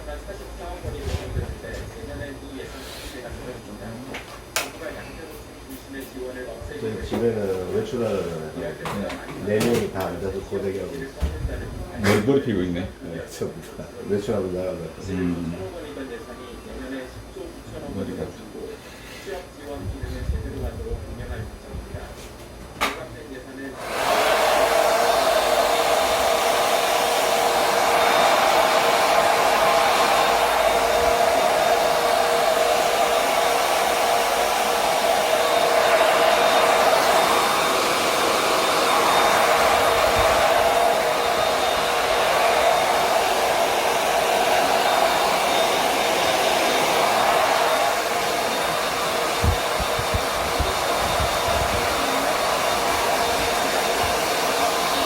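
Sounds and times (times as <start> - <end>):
hair dryer blowing: 23.8 - 55.0.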